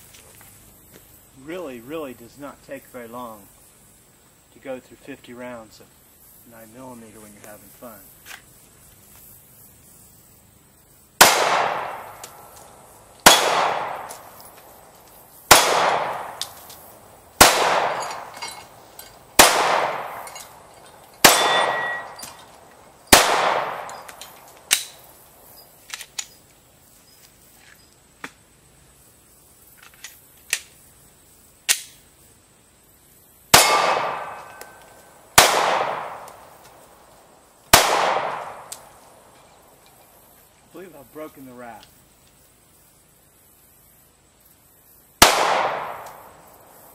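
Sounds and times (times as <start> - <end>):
pistol shots with echo: 11.2 - 12.5, 13.2 - 14.4, 15.5 - 16.5, 17.4 - 18.5, 19.4 - 20.6, 21.2 - 22.4, 23.1 - 24.9, 33.5 - 34.8, 35.4 - 36.4, 37.7 - 38.7, 45.2 - 46.3
quieter sharp cracks: 11.2 - 26.4, 33.5 - 40.2, 45.2 - 46.9.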